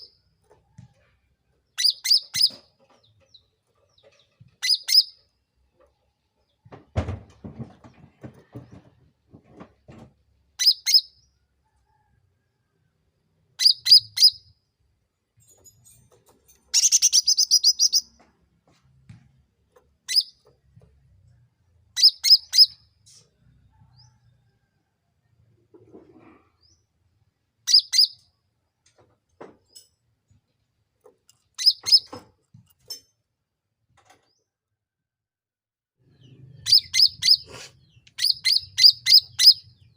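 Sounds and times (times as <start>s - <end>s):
songbird chirping: 16.7s - 18.3s, 36.0s - 39.9s.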